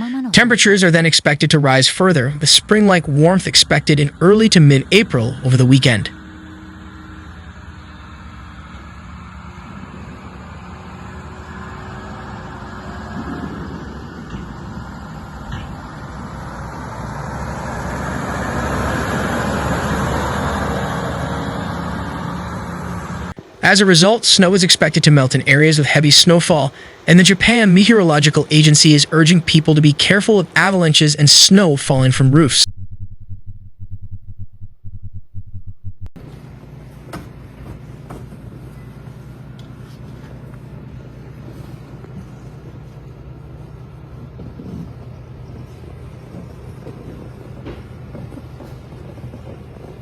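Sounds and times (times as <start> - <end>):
vehicle passing on road: 1.6 - 27.0, 36.2 - 50.0.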